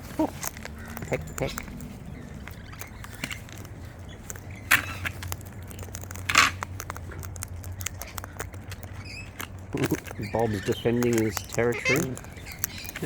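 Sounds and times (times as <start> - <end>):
beaks cracking seed: 0.0 - 13.0
cockatoo squawks: 7.9 - 13.0.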